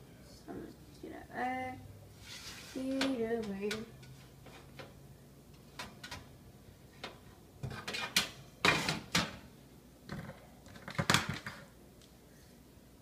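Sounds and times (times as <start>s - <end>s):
cookware clattering and scraping: 2.2s - 9.4s.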